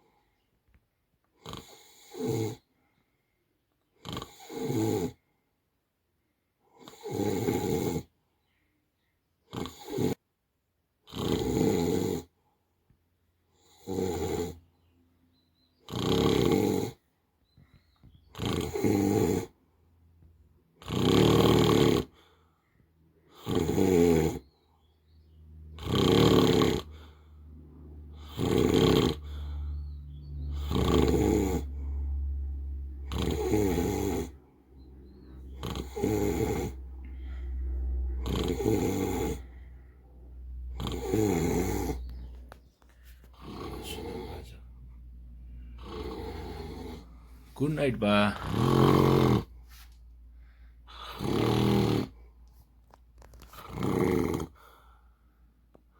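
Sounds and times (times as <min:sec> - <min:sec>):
man snoring: 0:01.4 - 0:02.7, 0:04.0 - 0:05.2, 0:06.8 - 0:08.1, 0:09.5 - 0:10.2, 0:11.1 - 0:12.3, 0:13.6 - 0:14.6, 0:15.9 - 0:17.0, 0:18.3 - 0:19.6, 0:20.8 - 0:22.2, 0:23.3 - 0:24.5, 0:25.8 - 0:27.2, 0:28.1 - 0:29.6, 0:30.4 - 0:32.0, 0:33.0 - 0:34.4, 0:35.4 - 0:37.4, 0:38.1 - 0:39.6, 0:40.7 - 0:42.3, 0:43.3 - 0:44.8, 0:45.6 - 0:49.6, 0:50.9 - 0:52.2, 0:53.6 - 0:54.7
low hum: 0:27.0 - 0:28.3, 0:29.2 - 0:30.7, 0:31.6 - 0:33.1, 0:34.3 - 0:35.6, 0:36.6 - 0:38.2, 0:39.4 - 0:40.8, 0:41.9 - 0:50.9.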